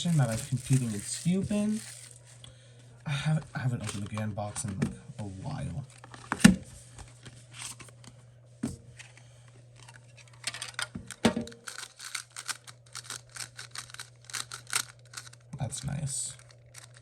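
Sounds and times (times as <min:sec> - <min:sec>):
speed cube clicking: 0:11.6 - 0:15.4.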